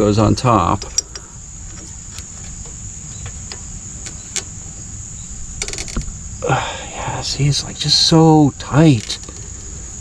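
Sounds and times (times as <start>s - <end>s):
crickets chirping: 0.0s - 10.0s
low background rumble: 0.0s - 10.0s
faint metal clicks: 0.7s - 4.6s, 5.6s - 6.2s.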